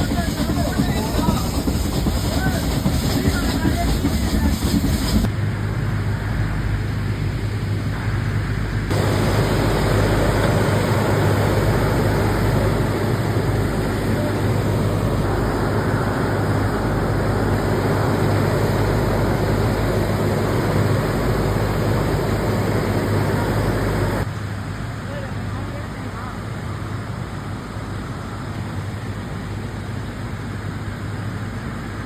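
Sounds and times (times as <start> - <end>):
train rumbling: 0.0 - 24.3.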